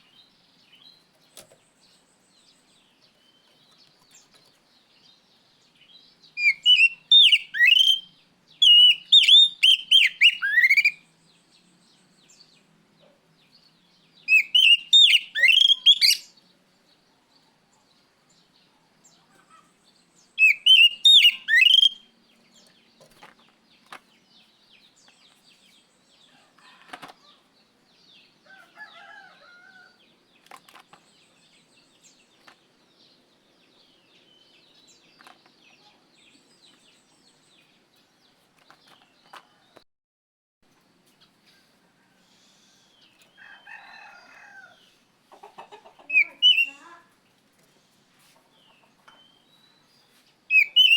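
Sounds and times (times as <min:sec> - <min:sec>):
magpie-robin whistled song: 0:06.4 - 0:11.1, 0:14.3 - 0:16.3, 0:20.4 - 0:22.1, 0:46.1 - 0:46.8, 0:49.1 - 0:50.9.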